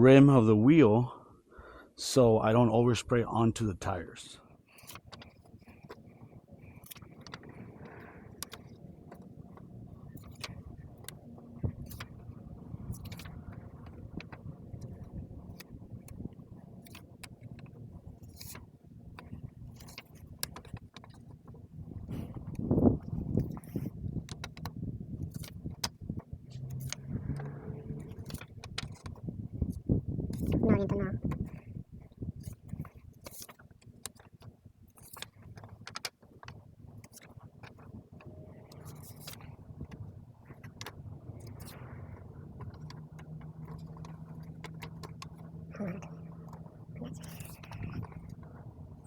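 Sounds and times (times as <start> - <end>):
low steady hum: 0.0 - 49.0
paper scraping: 4.7 - 24.6, 26.6 - 30.8, 35.0 - 45.6, 46.3 - 48.6.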